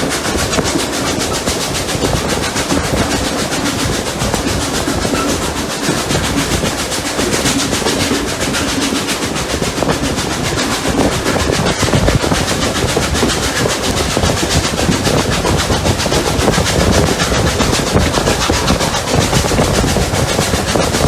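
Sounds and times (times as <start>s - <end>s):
steam locomotive chuffing: 0.0s - 21.0s
train rumble and clatter: 0.0s - 21.0s.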